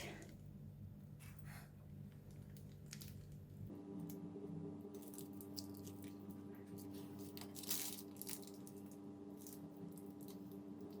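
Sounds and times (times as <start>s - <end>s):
steady low hum: 0.0s - 11.0s
plastic bag crinkling: 6.8s - 10.4s.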